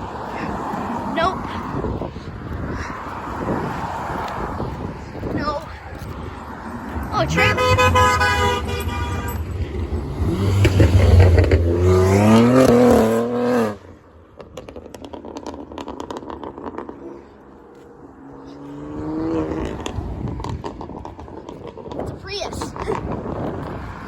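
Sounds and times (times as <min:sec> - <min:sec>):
quiet traffic: 0:00.0 - 0:24.0
vehicle approaching: 0:00.0 - 0:24.0
car accelerating past: 0:05.9 - 0:22.0.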